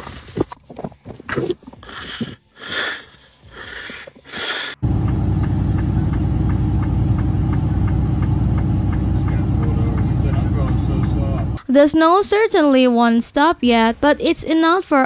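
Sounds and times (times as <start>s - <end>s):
rustling and crunching: 0.0s - 4.8s
vehicle engine low rumble: 4.8s - 11.6s.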